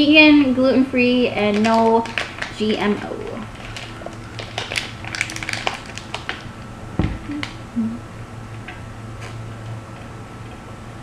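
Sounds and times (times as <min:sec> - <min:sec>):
plastic wrapper crinkling and tearing: 0:01.4 - 0:06.7
dull thump: 0:07.0 - 0:07.3.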